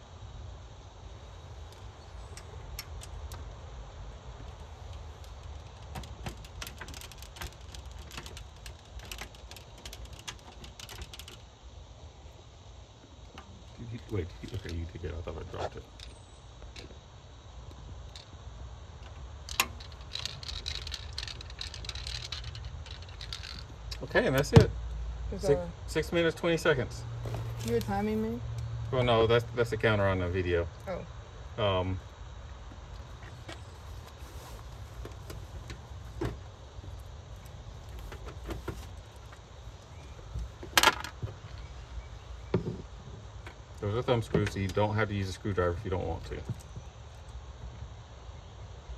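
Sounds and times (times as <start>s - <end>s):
light clicks and metal clinks: 4.4s - 11.5s, 19.0s - 24.7s
screwdriver and screws rattling: 4.9s - 11.4s, 19.5s - 24.6s.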